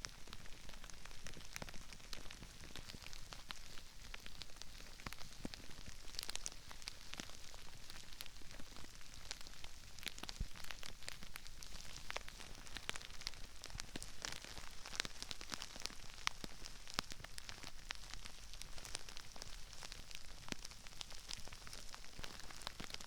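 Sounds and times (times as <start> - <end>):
crispy rice crackling: 0.0 - 23.0.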